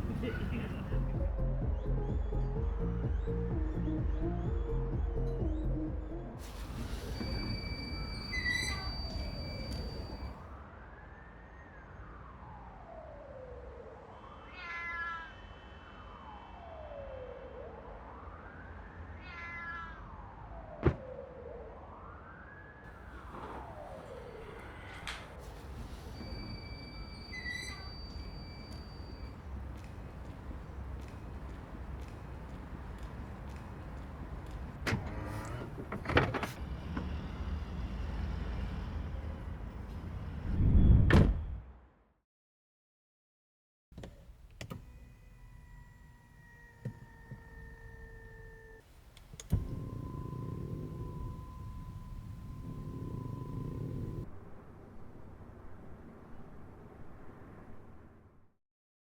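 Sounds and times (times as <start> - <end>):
meow-like cries: 14.4 - 15.6, 19.2 - 20.2
car door mechanism clicks and whirring: 29.3 - 37.2, 44.0 - 54.2
siren wailing: 49.4 - 54.2
low rumble: 49.5 - 56.6.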